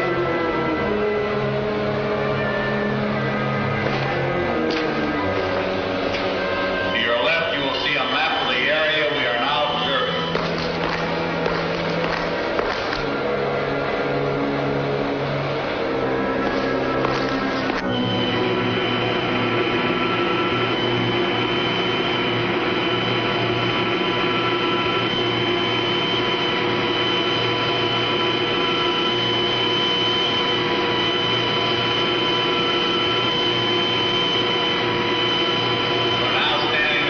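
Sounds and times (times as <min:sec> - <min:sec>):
generating machinery drone: 0:00.0 - 0:37.0
high whine: 0:00.0 - 0:37.0.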